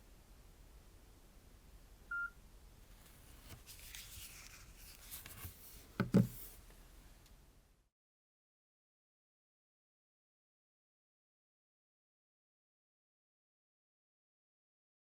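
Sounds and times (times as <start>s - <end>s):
mobile phone beep: 2.1s - 2.3s
faint rustling: 2.8s - 6.9s.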